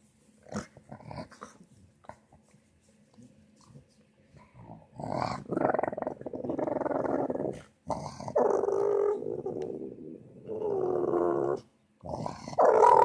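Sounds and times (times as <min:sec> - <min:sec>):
rough animal-like growling: 0:04.5 - 0:13.0.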